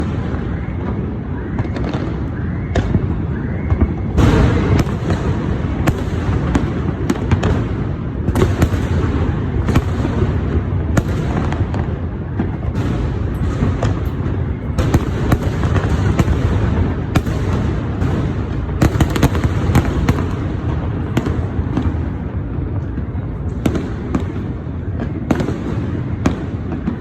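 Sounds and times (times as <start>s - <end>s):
sharp firework bangs: 0.0s - 23.0s
fireworks crackling and rumbling: 0.0s - 27.0s.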